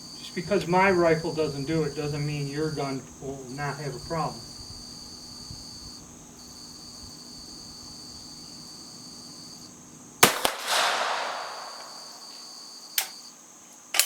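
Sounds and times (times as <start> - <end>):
crickets chirping: 0.0 - 14.0
rifle shot with echo: 10.2 - 12.3.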